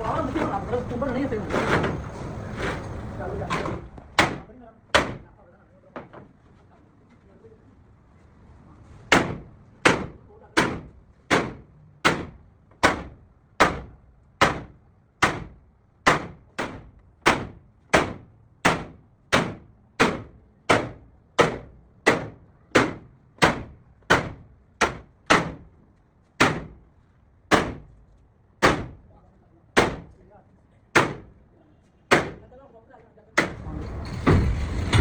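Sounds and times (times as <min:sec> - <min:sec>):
hammer striking sheet steel: 0:09.1 - 0:25.6, 0:26.4 - 0:26.8, 0:31.0 - 0:31.3.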